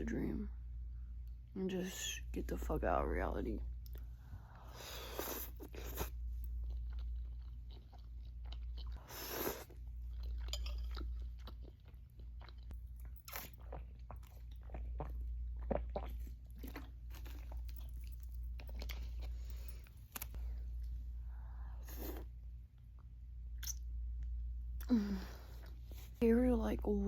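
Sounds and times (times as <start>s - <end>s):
steady low hum: 0.0s - 27.0s
person chewing noodles: 3.9s - 20.6s.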